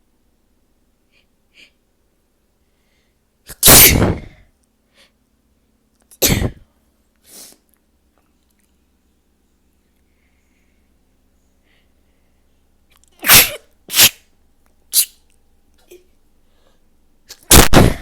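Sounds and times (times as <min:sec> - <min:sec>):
person sneezing loudly: 0:03.5 - 0:04.4, 0:06.2 - 0:06.7, 0:13.2 - 0:14.2, 0:14.9 - 0:15.2.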